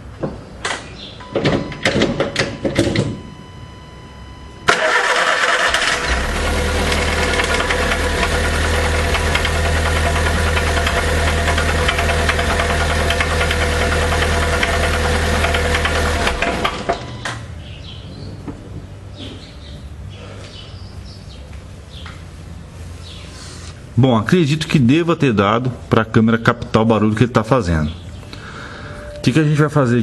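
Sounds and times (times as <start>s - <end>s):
car engine starting: 4.6s - 18.0s
engine knocking over hum: 5.9s - 17.1s.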